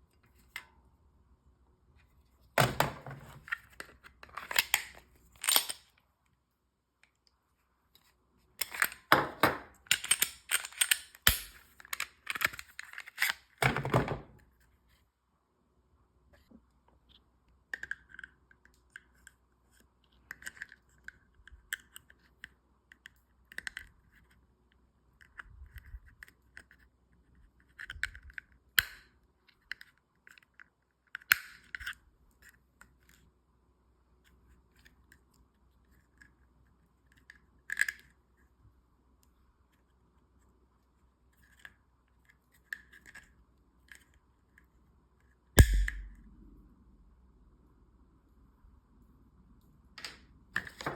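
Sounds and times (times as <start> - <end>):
handgun clicks and scrapes: 3.4 - 6.0, 8.0 - 9.1, 9.8 - 13.6, 45.6 - 46.2.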